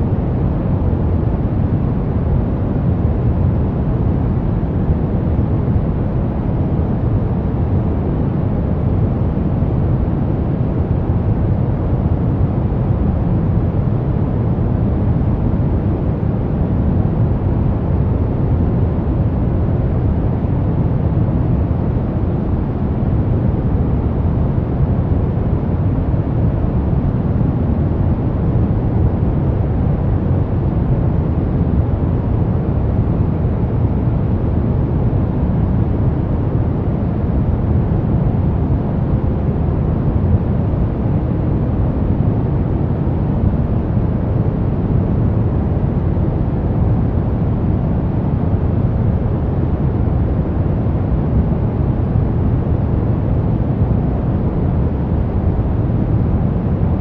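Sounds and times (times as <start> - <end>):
brown noise: 0.0 - 57.0.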